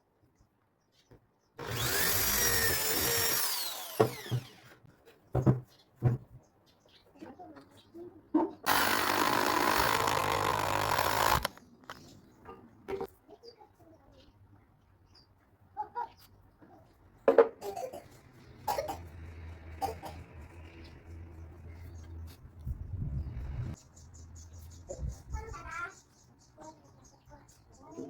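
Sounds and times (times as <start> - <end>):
electric power tool on wood: 1.6 - 4.8, 8.7 - 11.6.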